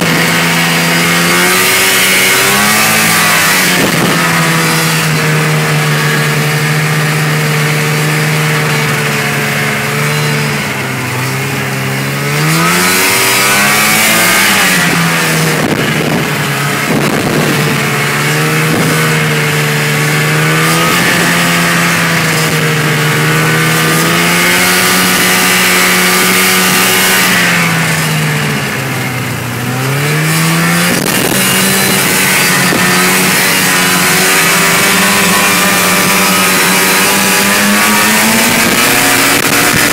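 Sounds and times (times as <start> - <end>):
snowmobile engine running: 0.0 - 39.9.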